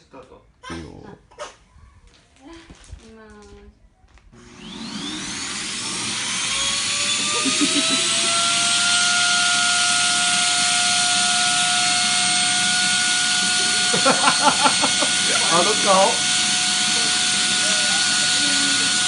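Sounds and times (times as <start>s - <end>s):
vacuum cleaner running: 4.3s - 19.0s.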